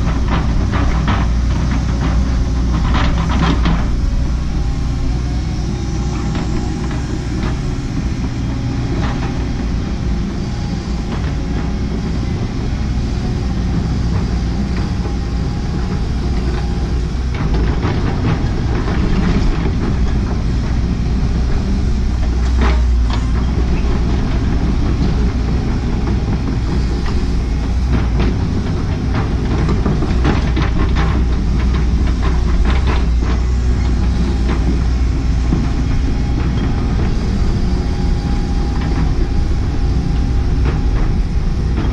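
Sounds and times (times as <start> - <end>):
machine clanks and knocks: 0.0 - 4.2, 17.3 - 20.8, 22.2 - 37.3, 38.7 - 41.9
excavator diesel engine running: 0.0 - 41.9.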